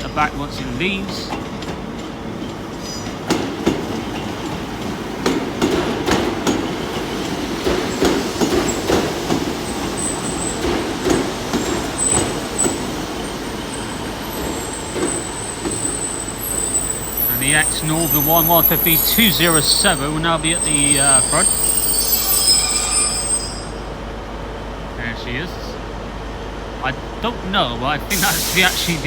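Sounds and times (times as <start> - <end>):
train underfloor rumble: 0.0 - 29.0
train wheels knocking on rail joints: 0.2 - 17.2
high wheel squeal: 7.9 - 24.0.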